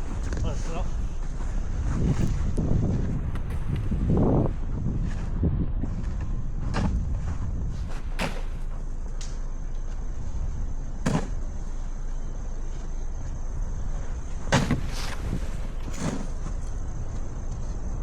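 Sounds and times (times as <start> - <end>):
traffic rumble: 0.0 - 18.0
wind: 0.0 - 18.0
sharp knocks or crunches: 7.9 - 8.7, 11.0 - 11.4, 14.4 - 16.5.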